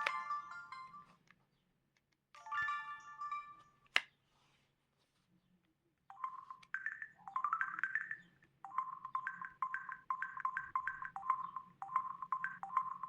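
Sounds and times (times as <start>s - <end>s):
phone ringtone melody: 0.0s - 1.2s, 2.4s - 3.8s, 6.1s - 13.0s.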